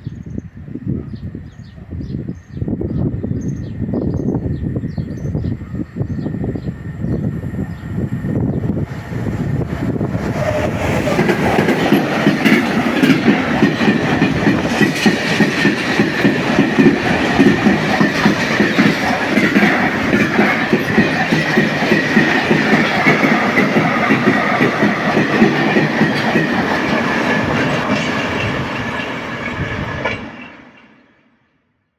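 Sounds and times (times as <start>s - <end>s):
train high whine: 2.2s - 31.4s
train wheels clacking: 9.1s - 31.0s.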